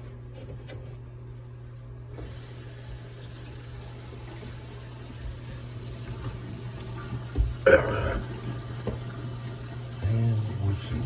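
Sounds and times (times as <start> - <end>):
water running from a tap: 2.2 - 11.0.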